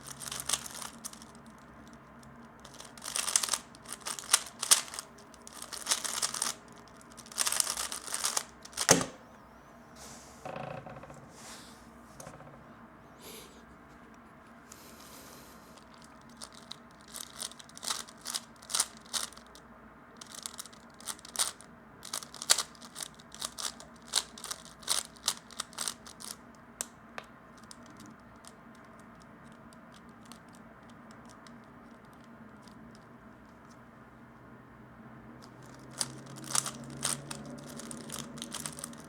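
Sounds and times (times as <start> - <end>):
plastic puzzle cube clicking: 0.2 - 2.0, 2.6 - 9.2, 15.8 - 19.4, 20.2 - 26.9, 27.6 - 33.0, 35.4 - 39.0.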